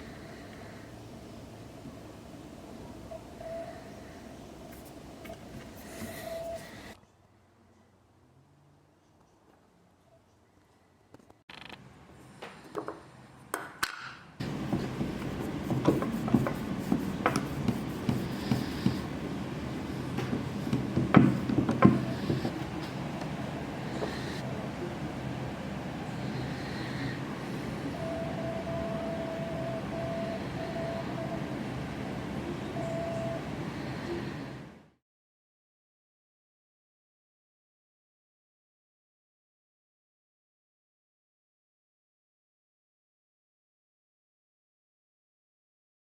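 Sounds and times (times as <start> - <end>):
mechanical rumble with whine: 14.4 - 34.5.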